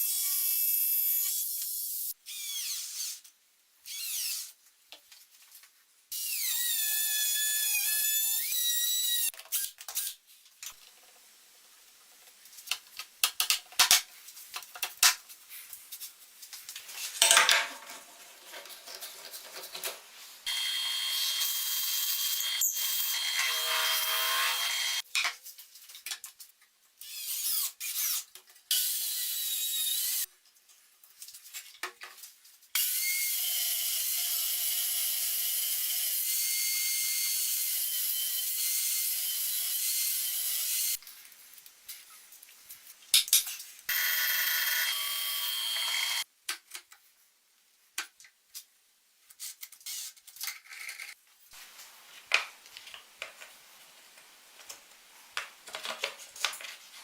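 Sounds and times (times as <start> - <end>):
power saw cutting wood: 20.5 - 25.0, 43.9 - 46.2.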